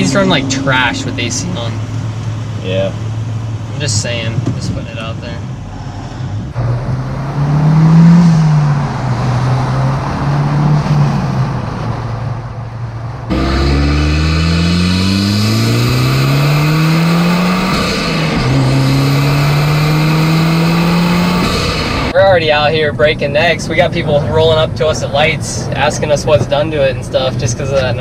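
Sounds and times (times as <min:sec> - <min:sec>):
turbocharged car engine accelerating: 0:00.0 - 0:04.0, 0:06.3 - 0:12.1, 0:13.2 - 0:22.2
turbo and intake noise: 0:13.2 - 0:22.2.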